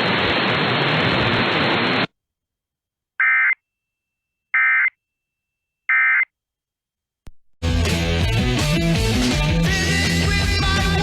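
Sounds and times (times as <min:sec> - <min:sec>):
static hiss: 0:00.0 - 0:02.1.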